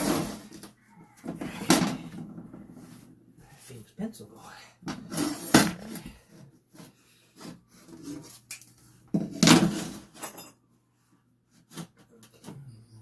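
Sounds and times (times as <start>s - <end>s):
tools scraping on wooden floor: 0.0s - 3.1s, 4.9s - 8.5s, 9.1s - 10.4s.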